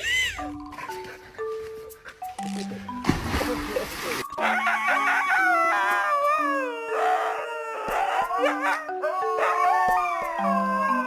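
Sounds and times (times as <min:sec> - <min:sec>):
background music with low notes: 0:00.0 - 0:11.0
dog howling: 0:04.4 - 0:11.0.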